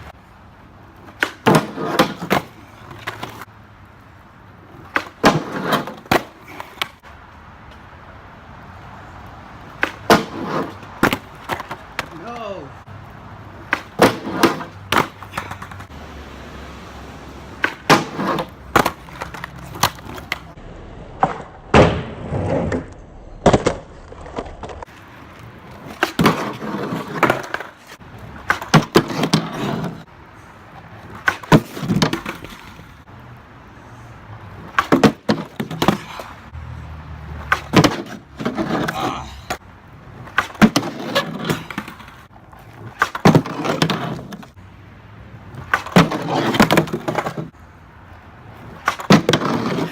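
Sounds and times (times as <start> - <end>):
skateboard wheels rolling: 0.0 - 49.9
skateboard popping and clattering: 1.0 - 3.5, 4.7 - 7.0, 9.6 - 12.2, 13.6 - 15.9, 17.5 - 30.1, 30.9 - 33.0, 34.5 - 36.3, 37.4 - 44.6, 45.5 - 47.6, 48.5 - 49.9.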